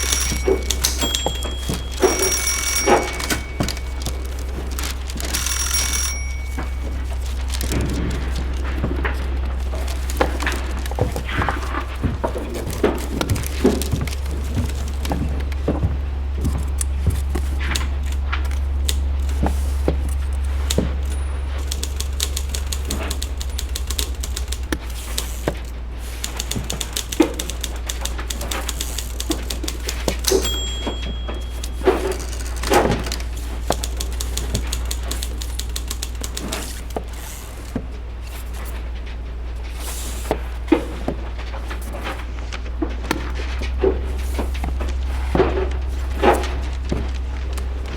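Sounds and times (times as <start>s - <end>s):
footsteps on wooden floor: 0.0s - 35.2s
typewriter keys clacking: 0.0s - 42.4s
desk fan humming: 0.0s - 47.9s
paper rustle: 0.0s - 47.9s.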